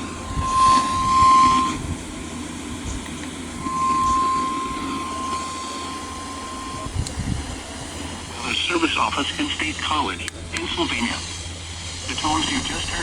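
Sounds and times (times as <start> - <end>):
alert tone: 0.0 - 7.0
radio hiss: 0.0 - 13.0.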